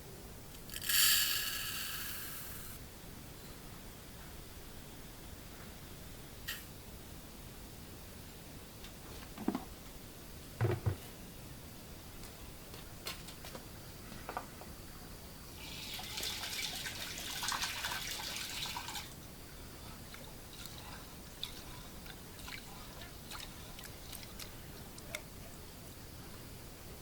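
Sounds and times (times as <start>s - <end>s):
water pouring and splashing: 15.6s - 19.2s, 20.1s - 24.5s.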